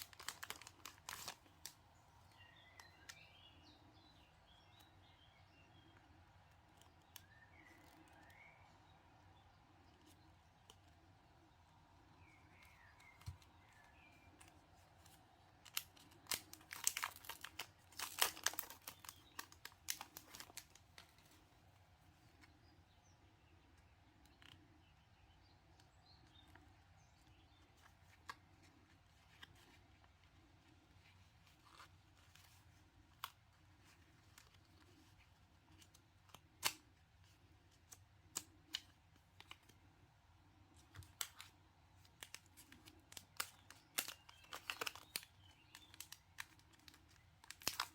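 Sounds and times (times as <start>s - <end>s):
packaging and paper crinkling: 0.0s - 1.8s, 15.0s - 21.4s, 42.1s - 47.9s
faint bird chirps: 2.0s - 15.6s.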